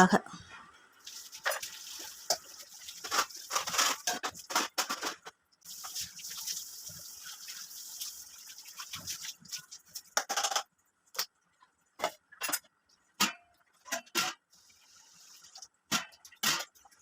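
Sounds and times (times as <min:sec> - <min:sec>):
water splashing and dripping: 0:01.0 - 0:04.6, 0:05.6 - 0:10.2.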